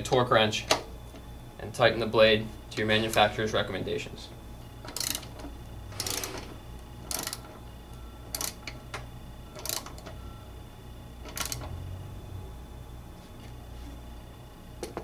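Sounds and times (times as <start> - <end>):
ratchet wrench clicking: 4.9 - 5.3, 6.0 - 6.3, 7.1 - 7.5, 8.3 - 8.8, 9.6 - 10.0, 11.3 - 11.7.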